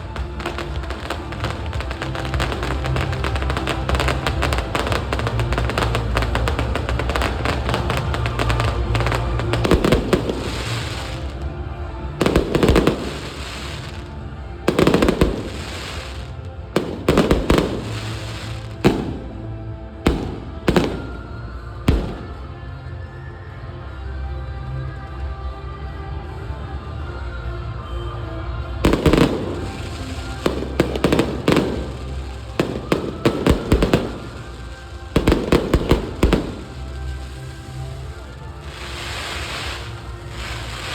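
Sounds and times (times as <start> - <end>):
fireworks crackling bangs: 0.0 - 11.6, 12.2 - 22.6, 28.8 - 40.9
music: 0.0 - 40.9
firework shells bursting: 28.9 - 40.9.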